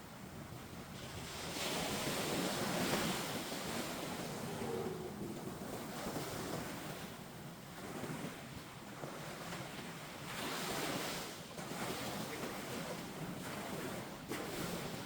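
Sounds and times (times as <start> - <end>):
waves breaking on beach: 0.0 - 15.0.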